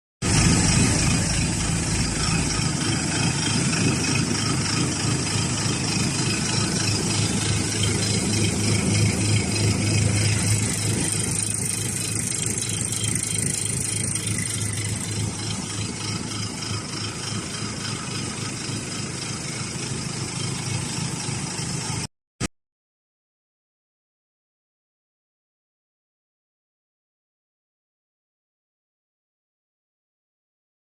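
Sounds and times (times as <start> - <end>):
concrete mixer pump engine running: 0.2 - 22.1.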